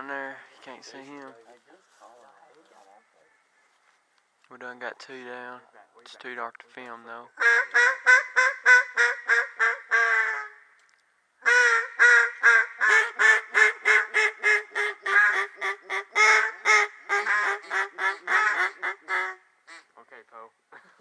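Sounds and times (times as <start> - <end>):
duck call quacking: 7.4 - 10.6, 11.4 - 19.9.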